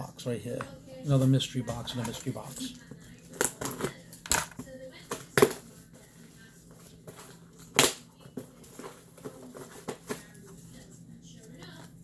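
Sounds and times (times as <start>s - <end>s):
boxes being handled: 6.7s - 10.6s.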